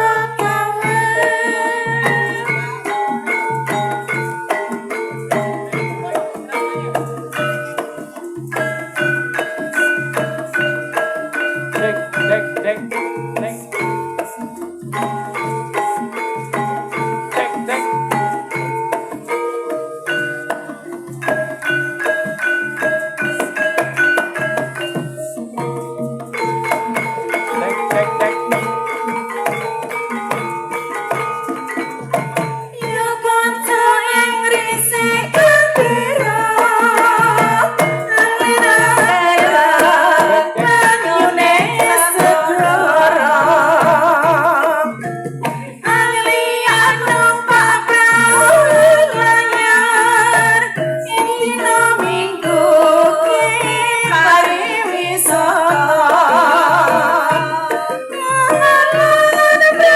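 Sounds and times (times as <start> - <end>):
person singing: 0.0 - 3.1, 27.0 - 29.7, 32.1 - 59.9
gamelan music: 0.0 - 59.9
tuned mallet percussion: 0.0 - 59.9.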